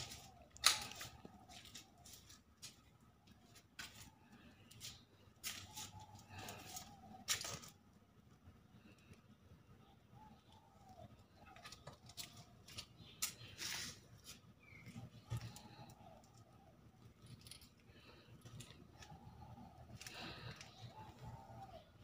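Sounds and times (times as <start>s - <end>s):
faint bird calls: 8.8s - 22.0s.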